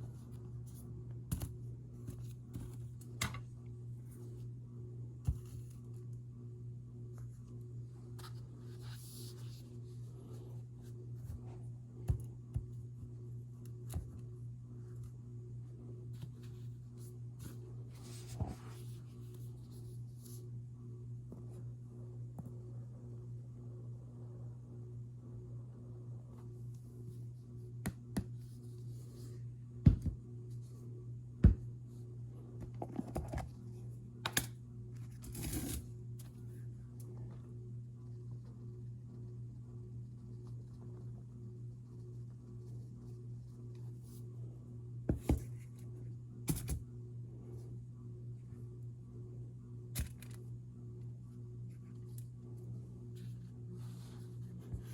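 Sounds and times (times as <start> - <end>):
steady low hum: 0.0 - 54.9.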